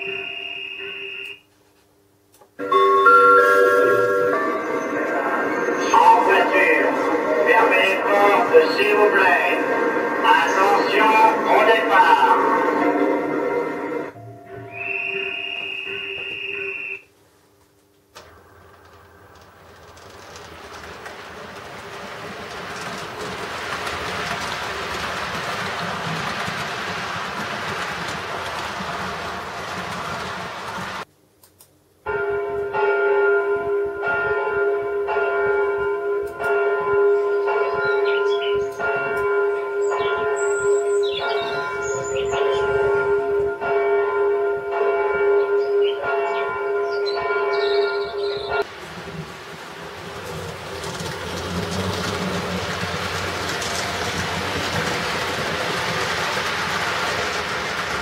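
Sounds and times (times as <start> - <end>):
train rolling by: 0.0 - 1.4, 2.6 - 31.1, 32.1 - 58.0
church bells ringing: 2.6 - 16.9, 32.0 - 48.7.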